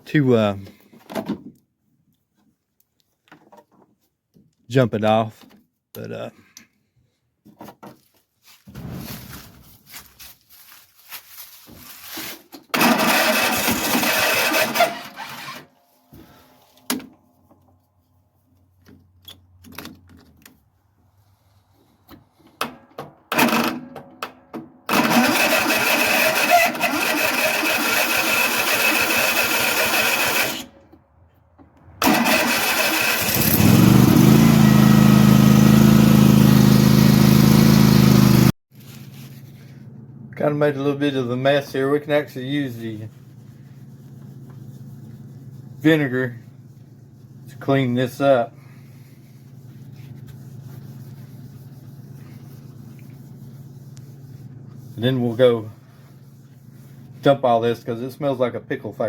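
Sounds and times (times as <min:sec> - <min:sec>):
lawnmower engine running: 0:12.7 - 0:15.6, 0:24.9 - 0:30.7, 0:32.0 - 0:38.5
electric starter cranking mower: 0:12.7 - 0:15.7, 0:23.3 - 0:23.8, 0:24.9 - 0:30.8, 0:32.0 - 0:38.5.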